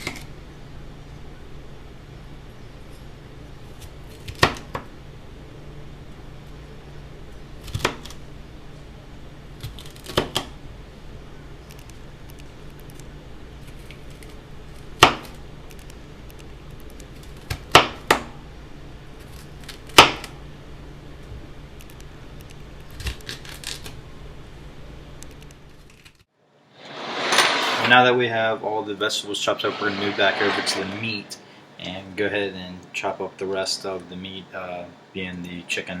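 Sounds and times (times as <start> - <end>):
low hum: 29.5 - 31.5.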